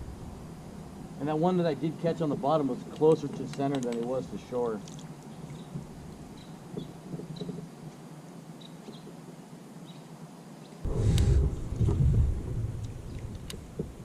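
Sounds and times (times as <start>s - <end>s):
low rumbling buffet on microphone: 10.9s - 14.0s.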